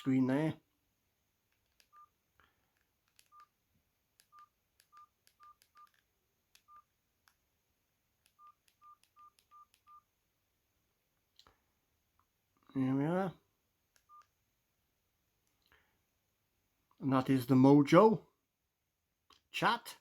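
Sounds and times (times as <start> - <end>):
phone keypad beeps: 1.8 - 2.1, 3.2 - 3.5, 4.3 - 6.0, 6.6 - 6.9, 8.3 - 10.1, 14.0 - 14.3
key press clicks: 2.8 - 3.5, 4.2 - 7.4.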